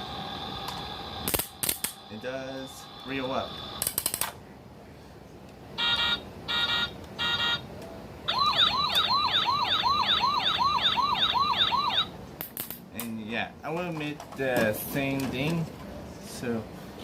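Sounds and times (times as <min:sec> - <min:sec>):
warbling electronic siren: 0:02.1 - 0:03.8, 0:08.3 - 0:12.1.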